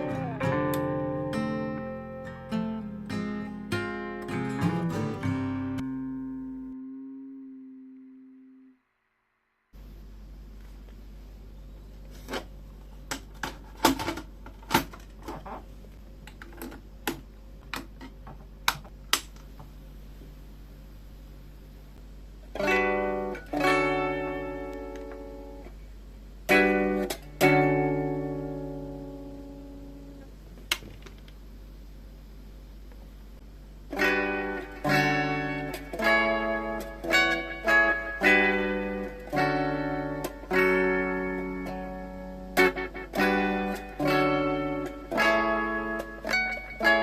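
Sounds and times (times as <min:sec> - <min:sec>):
guitar chords strummed: 0:00.0 - 0:08.8, 0:22.6 - 0:25.8, 0:26.5 - 0:30.3, 0:33.9 - 0:47.0
steady low hum: 0:00.0 - 0:46.9.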